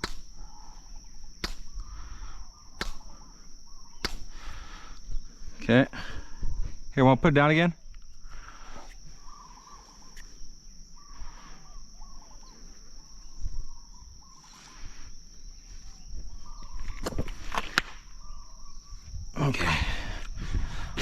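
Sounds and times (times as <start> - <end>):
sharp clicks: 0.0 - 0.3, 1.4 - 1.9, 2.8 - 3.2, 4.0 - 5.1
high-pitched insect drone: 0.0 - 17.4
small birds chirping: 0.0 - 19.3.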